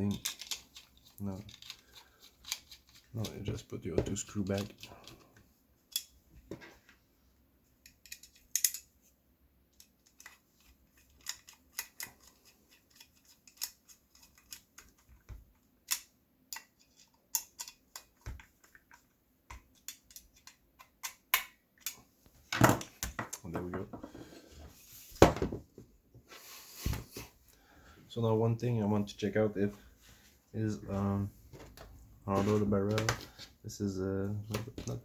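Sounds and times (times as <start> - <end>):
handling metal parts: 0.0 - 6.8, 7.8 - 9.0, 9.7 - 15.1.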